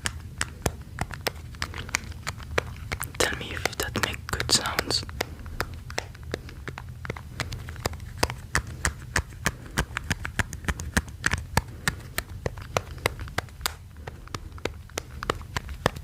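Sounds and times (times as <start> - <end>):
fingers tapping on plastic case: 0.0 - 16.0.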